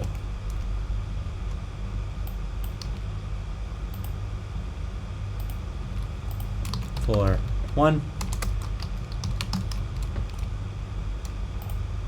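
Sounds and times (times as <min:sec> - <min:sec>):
low background hum: 0:00.0 - 0:12.0
computer keyboard keystrokes: 0:02.3 - 0:03.1, 0:05.4 - 0:10.5, 0:11.2 - 0:11.8.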